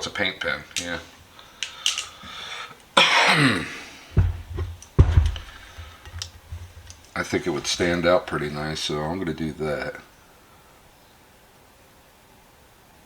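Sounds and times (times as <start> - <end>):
person coughing: 3.0 - 3.9
dull thumps of handling: 4.1 - 8.0.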